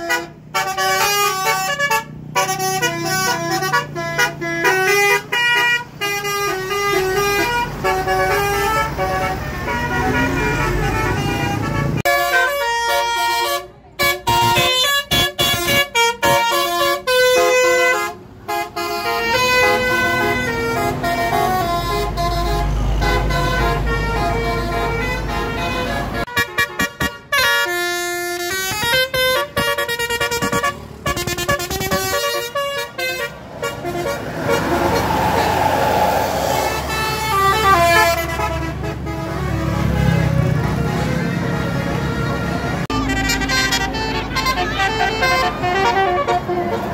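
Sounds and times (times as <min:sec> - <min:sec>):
musical bus horns playing tunes: 0:00.0 - 0:46.9.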